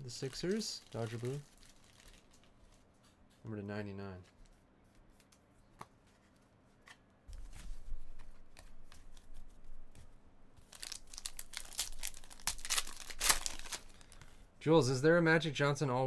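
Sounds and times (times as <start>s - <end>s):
wrapper tearing and crinkling: 0.0s - 2.5s, 10.7s - 14.2s.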